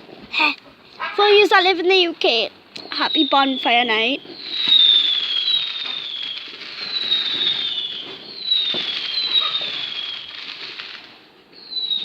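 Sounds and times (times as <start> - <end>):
distant fireworks crackling: 0.0 - 12.0
whistling fireworks: 2.8 - 12.0.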